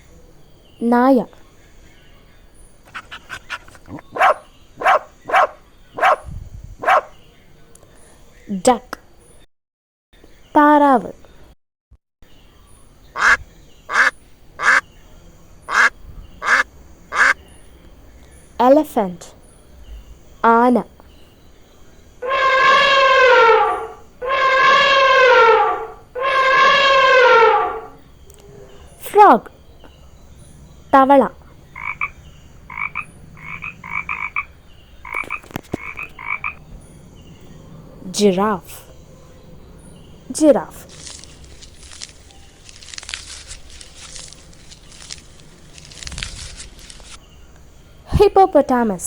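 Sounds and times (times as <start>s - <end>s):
frog croaking: 2.8s - 7.2s, 13.2s - 14.8s, 15.7s - 17.4s, 22.2s - 28.0s, 31.7s - 36.6s
duck quacking: 2.9s - 6.2s, 13.2s - 14.8s, 15.7s - 17.4s.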